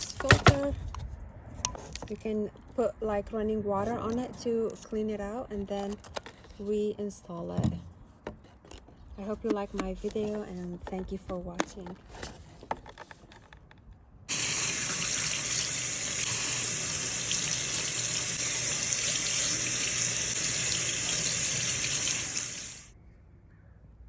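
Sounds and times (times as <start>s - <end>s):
water running from tap: 14.3s - 22.9s.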